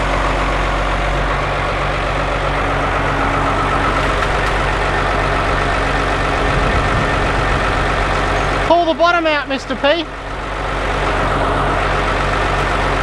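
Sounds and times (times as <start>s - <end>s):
engine idling: 0.0s - 13.0s.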